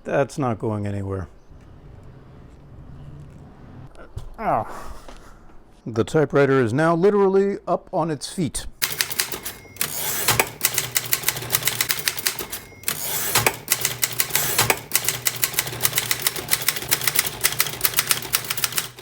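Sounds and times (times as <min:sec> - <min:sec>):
manual typewriter keystrokes: 0:08.8 - 0:19.0.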